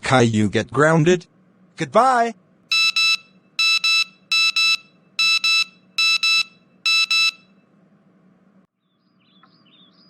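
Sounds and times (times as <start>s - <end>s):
telephone double beeps: 2.7s - 7.5s.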